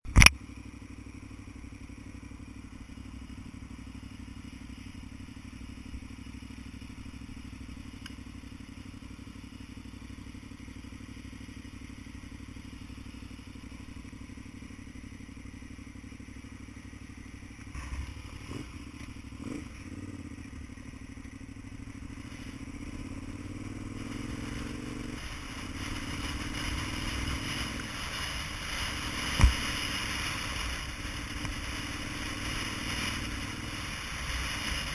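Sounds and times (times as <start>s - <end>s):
rush of road noise: 0.0s - 34.9s
vehicle engine running: 0.0s - 34.9s
sharp click: 0.1s - 0.4s.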